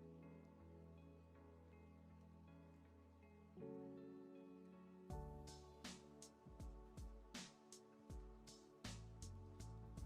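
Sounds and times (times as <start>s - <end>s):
light regular drum beat: 5.1s - 10.0s.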